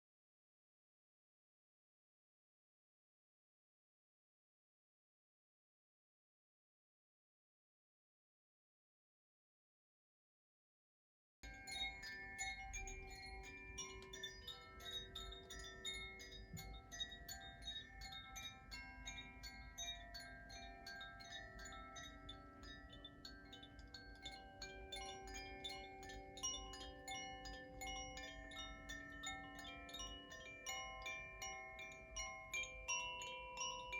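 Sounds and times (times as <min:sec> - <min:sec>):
chimes tinkling: 0:11.5 - 0:33.9.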